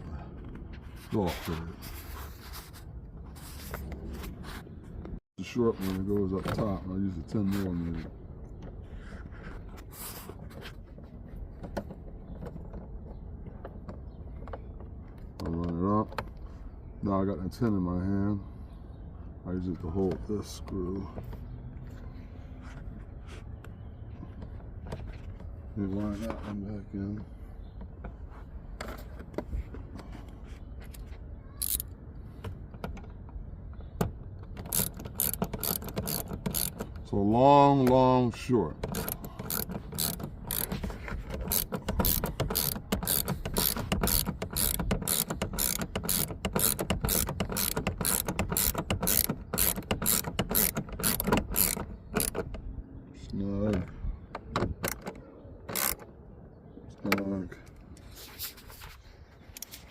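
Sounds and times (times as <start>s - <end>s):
tool and screw clicks: 31.6s - 32.0s, 34.6s - 37.0s, 38.7s - 52.5s, 55.7s - 56.1s.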